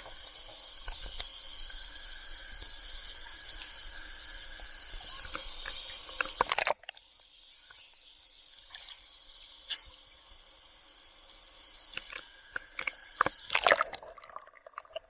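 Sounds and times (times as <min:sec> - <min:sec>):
underwater hiss: 0:00.0 - 0:06.6
sharp underwater clicks: 0:05.2 - 0:07.1.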